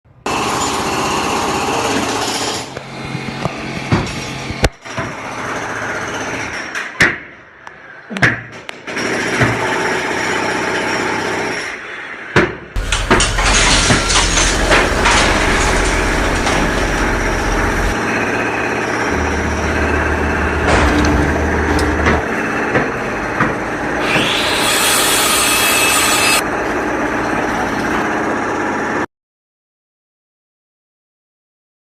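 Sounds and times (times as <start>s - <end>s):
heavy engine rumble: 12.8s - 24.7s
sawing-like noise: 13.5s - 26.4s.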